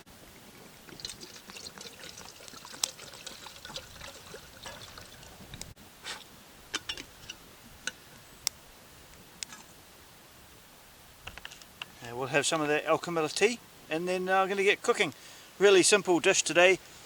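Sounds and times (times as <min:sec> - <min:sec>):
water poured into a kettle: 0:00.9 - 0:05.4.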